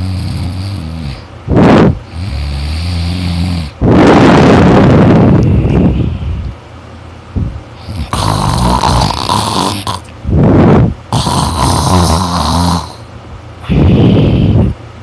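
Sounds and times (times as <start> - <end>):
person snoring loudly: 0.0 - 5.9, 7.8 - 14.7
rush of breath: 13.6 - 14.8.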